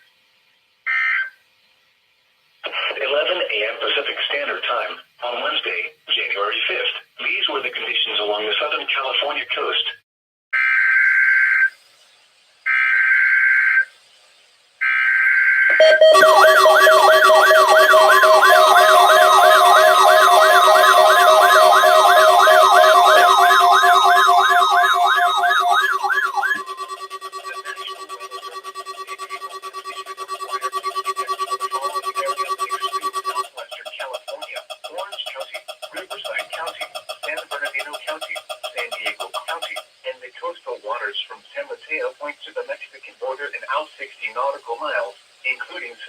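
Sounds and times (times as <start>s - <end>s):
siren-like alert tone: 15.7s - 39.8s
data tone bursts: 15.7s - 39.9s.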